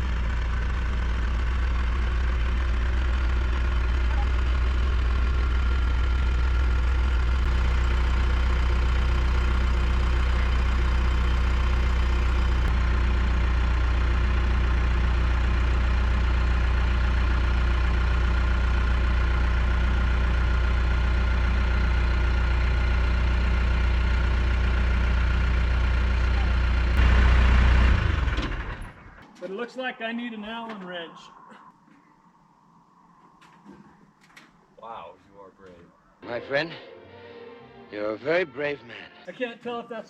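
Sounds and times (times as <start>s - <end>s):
diesel engine idling: 0.0s - 29.8s.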